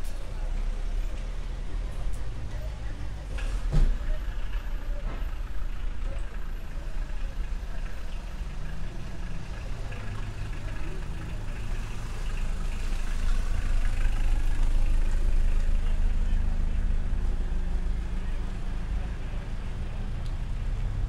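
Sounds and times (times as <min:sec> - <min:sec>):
street noise: 0:00.0 - 0:21.0
car engine idling: 0:04.2 - 0:19.0.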